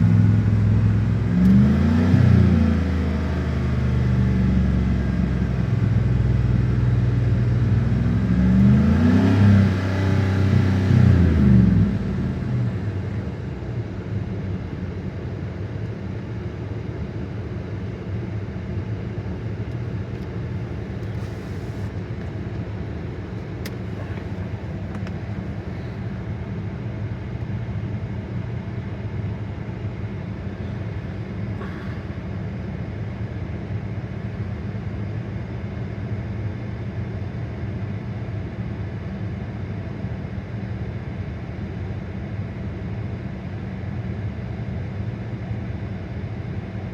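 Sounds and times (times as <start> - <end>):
car engine idling: 0.0 - 8.8, 10.4 - 16.4, 19.2 - 26.6.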